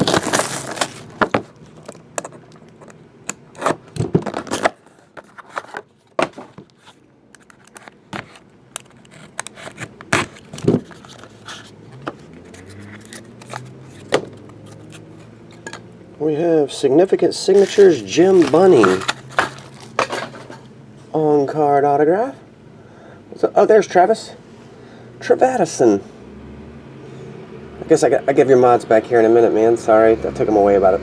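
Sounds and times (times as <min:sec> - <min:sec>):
cardboard and plastic scraping: 0:00.0 - 0:02.4, 0:03.6 - 0:15.6, 0:17.4 - 0:20.7
packaging being torn: 0:00.0 - 0:02.7, 0:04.2 - 0:04.8, 0:07.4 - 0:11.7, 0:17.5 - 0:20.0.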